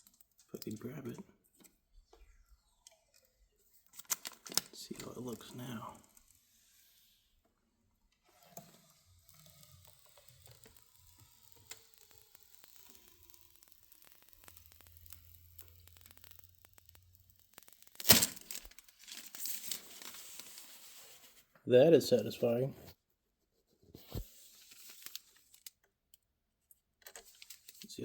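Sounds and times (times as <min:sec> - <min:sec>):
plastic film crackling: 0:03.8 - 0:06.4, 0:08.2 - 0:21.3, 0:24.1 - 0:25.8
plastic film tearing rip: 0:03.9 - 0:05.1, 0:08.3 - 0:20.8, 0:24.6 - 0:25.7.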